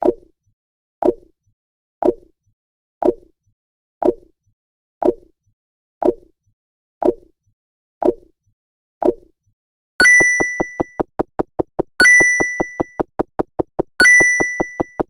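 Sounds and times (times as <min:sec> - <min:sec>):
hollow pop sound effect: 0:10.0 - 0:15.0.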